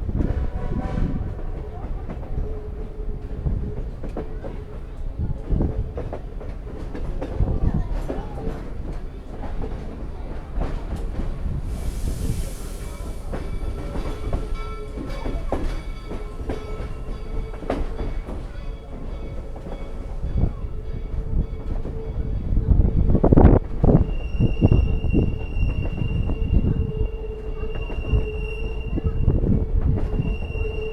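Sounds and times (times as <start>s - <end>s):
train rumbling on rails: 0.0s - 30.9s
brief hiss: 11.6s - 14.5s
high wheel squeals: 23.8s - 30.9s.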